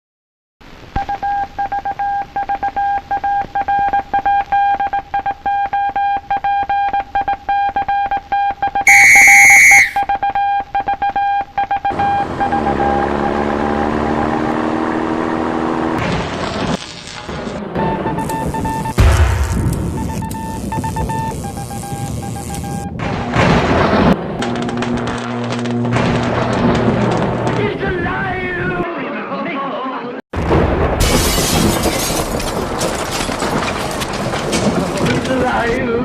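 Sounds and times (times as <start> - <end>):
morse code beeps: 1.0 - 13.5, 17.8 - 19.2, 19.8 - 23.0
loud high buzz: 18.0 - 23.4.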